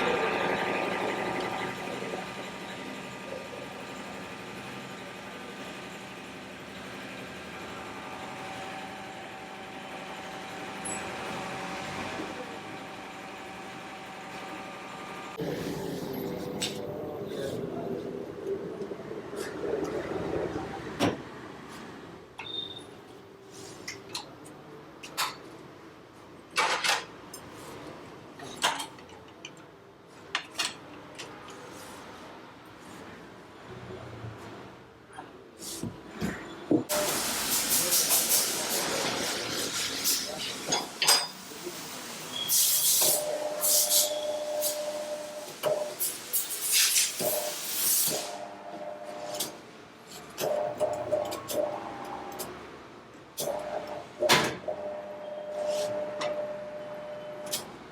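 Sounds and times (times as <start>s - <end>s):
steady machine hum: 0.0s - 21.6s
hissing bursts of compressed air: 36.9s - 40.7s, 42.2s - 48.4s.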